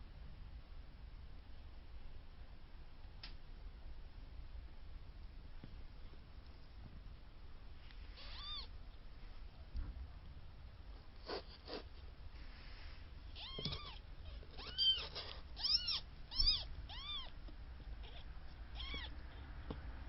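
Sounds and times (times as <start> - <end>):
kittens mewing: 8.1 - 8.7, 13.3 - 19.6.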